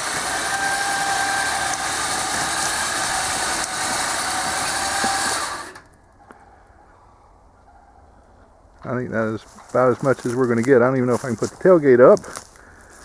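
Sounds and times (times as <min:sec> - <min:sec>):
winch motor whining: 0:00.0 - 0:06.0.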